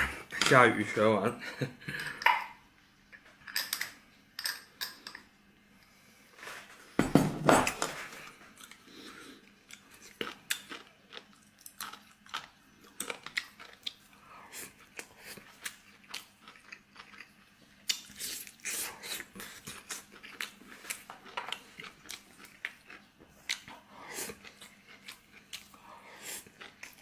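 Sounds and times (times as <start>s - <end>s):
person chewing food: 8.2s - 27.0s.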